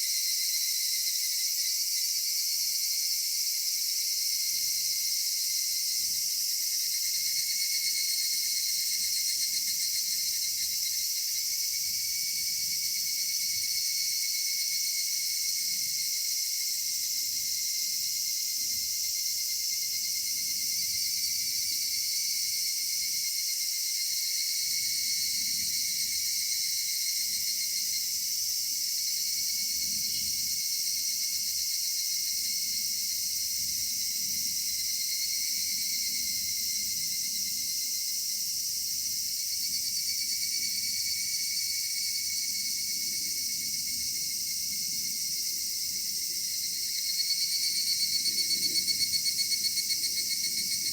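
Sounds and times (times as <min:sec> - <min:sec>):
cicadas calling: 0:19.2 - 0:50.9.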